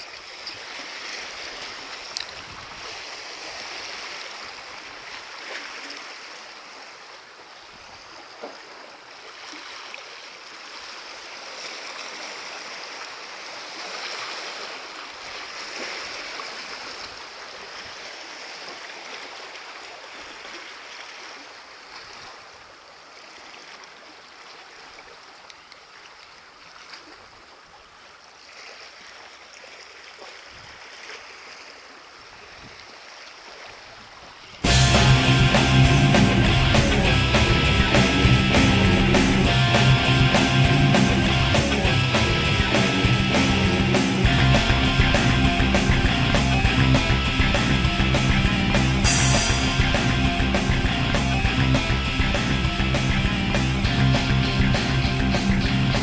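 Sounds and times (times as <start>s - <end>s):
sea water lapping against breakwater: 0.0s - 34.7s.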